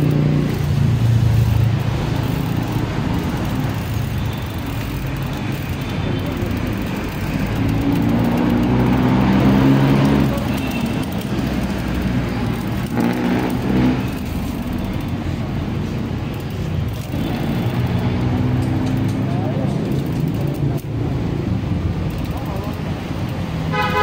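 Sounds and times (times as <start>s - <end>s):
vehicle engines passing by: 0.0s - 24.0s.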